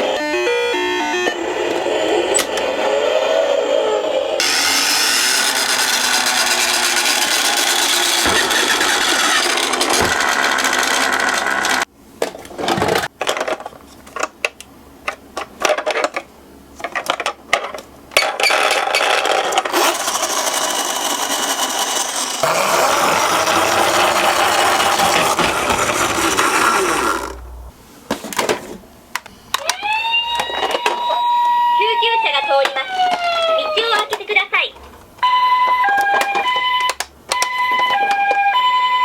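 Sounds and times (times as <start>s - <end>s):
toy cars clicking and clattering: 4.4s - 11.9s, 16.8s - 27.4s
toy cars rolling on a slope: 4.4s - 11.9s, 18.2s - 27.4s.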